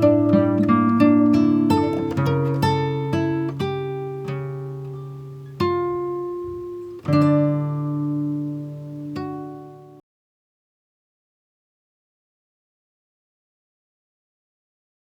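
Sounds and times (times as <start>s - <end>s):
acoustic guitar plucking: 0.0s - 10.0s.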